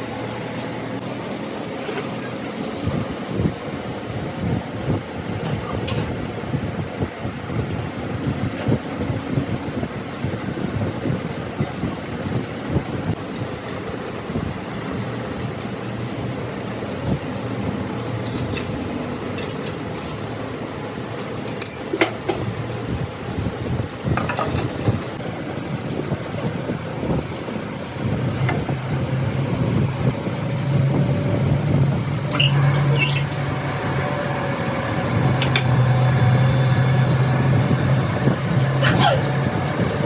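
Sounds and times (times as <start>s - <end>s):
motor humming: 27.0s - 40.0s.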